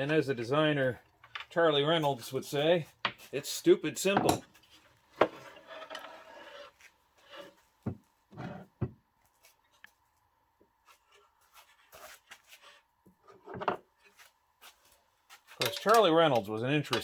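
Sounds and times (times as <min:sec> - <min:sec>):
tools and parts handled: 0:15.4 - 0:17.0.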